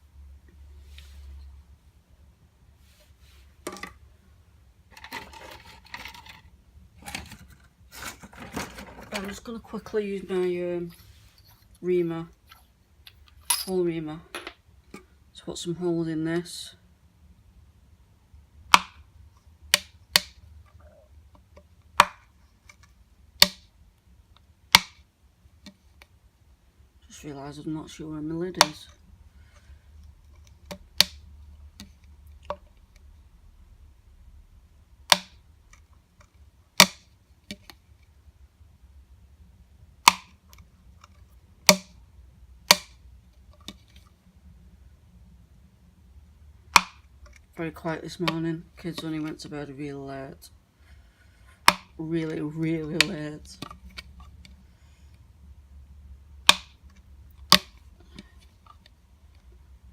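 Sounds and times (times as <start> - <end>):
plastic snapping: 18.7 - 19.0, 22.0 - 23.7, 24.7 - 25.0, 35.1 - 37.8, 40.0 - 40.4, 42.6 - 43.0, 46.7 - 47.4, 51.6 - 51.9, 56.4 - 58.3.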